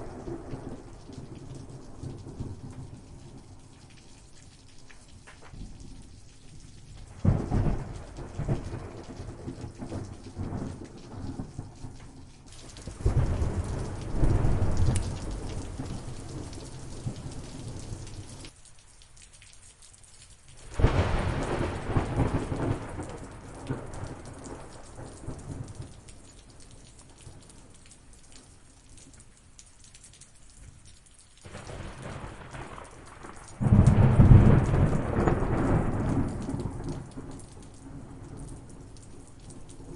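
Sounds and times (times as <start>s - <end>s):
steady rain: 0.0s - 39.9s
thunder rolling: 7.0s - 12.1s, 12.7s - 18.5s, 20.8s - 25.8s, 31.5s - 38.9s
sharp thunder clap: 12.8s - 17.7s, 31.5s - 37.2s.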